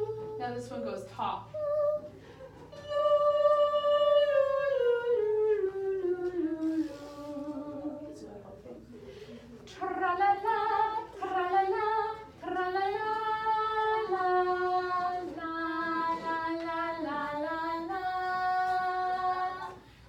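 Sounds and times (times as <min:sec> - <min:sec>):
woman singing: 0:00.0 - 0:02.1, 0:02.7 - 0:08.4, 0:09.7 - 0:19.9
child singing: 0:09.7 - 0:19.8.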